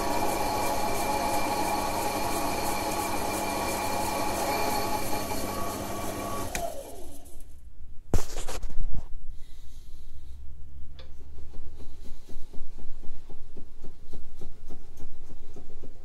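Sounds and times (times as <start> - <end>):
lathe motor whine: 0.0 - 7.2.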